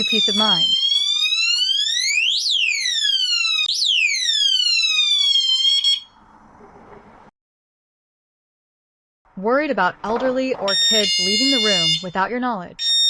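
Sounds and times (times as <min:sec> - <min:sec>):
alarm siren sweeping tone: 0:00.0 - 0:07.3, 0:10.7 - 0:12.2, 0:12.8 - 0:13.0.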